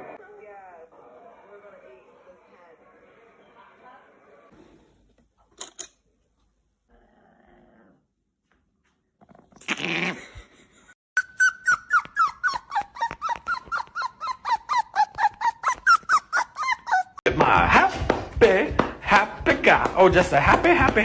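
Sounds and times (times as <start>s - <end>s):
dog squeaking rapidly: 11.2s - 17.3s.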